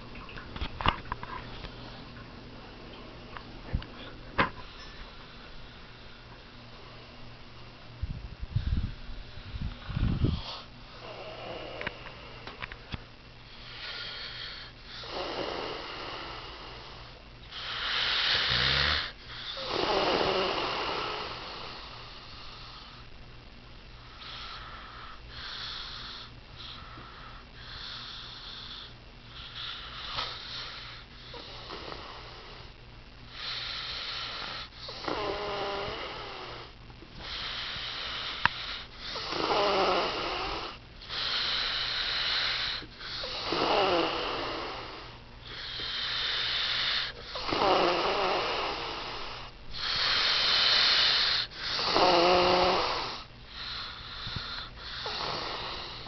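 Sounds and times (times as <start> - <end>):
person snoring loudly: 10.1 - 11.9, 13.7 - 17.0, 17.6 - 22.0, 33.3 - 38.4, 39.0 - 56.0.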